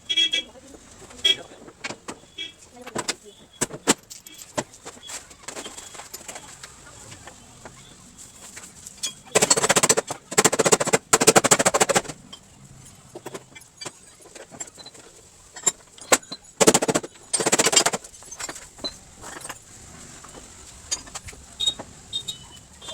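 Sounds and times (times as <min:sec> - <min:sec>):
clicks and knocks: 0:01.6 - 0:07.8, 0:09.0 - 0:12.5, 0:13.2 - 0:19.6
power tool rattling: 0:09.3 - 0:12.3, 0:13.1 - 0:19.7.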